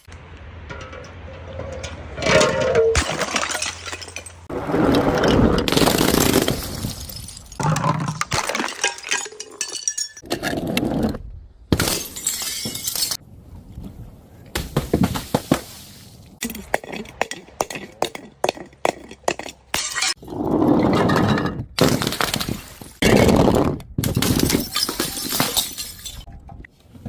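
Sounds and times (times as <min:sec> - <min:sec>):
glass bottles smashing: 0:02.2 - 0:04.5, 0:05.7 - 0:10.3, 0:11.8 - 0:13.2, 0:24.1 - 0:26.3.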